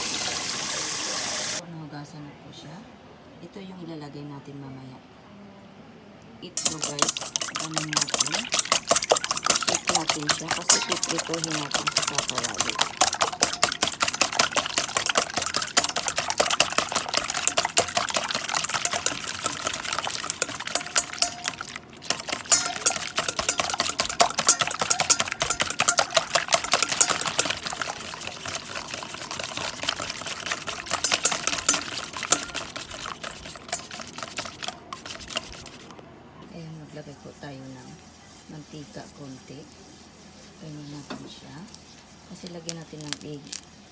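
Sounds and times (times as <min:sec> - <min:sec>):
liquid sloshing: 0:06.6 - 0:36.0
utensil clicking against bowl: 0:06.6 - 0:36.0.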